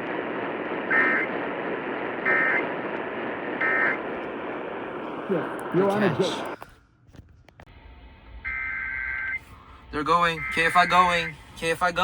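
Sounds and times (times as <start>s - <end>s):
radio hiss: 0.0s - 6.6s, 9.1s - 12.0s.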